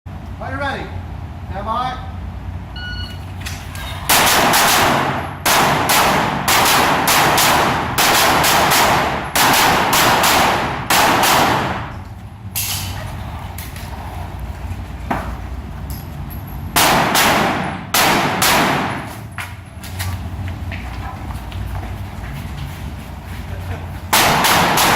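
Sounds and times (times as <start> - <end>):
shot timer beep: 2.8 - 3.2
pistol shots: 4.1 - 11.9, 16.8 - 19.1, 24.1 - 24.9.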